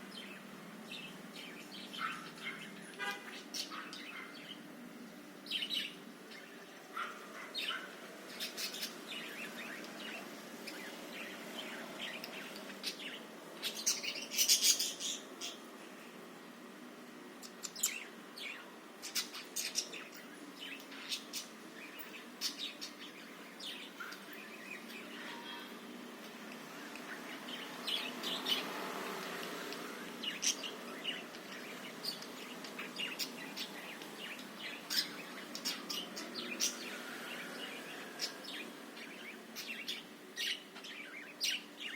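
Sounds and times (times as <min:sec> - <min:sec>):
budgerigars chirping: 0:05.5 - 0:15.6, 0:30.2 - 0:41.9.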